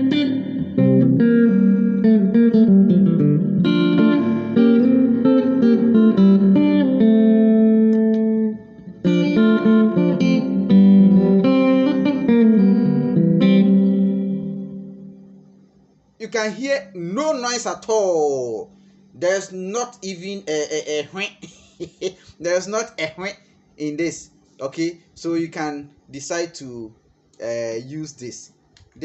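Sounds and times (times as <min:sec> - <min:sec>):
electric guitar notes and chords: 0:00.0 - 0:15.5.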